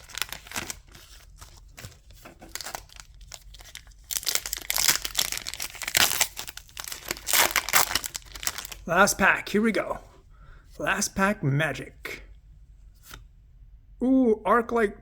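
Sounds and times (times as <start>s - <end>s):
foil wrapper crinkling and tearing: 0.0s - 8.9s.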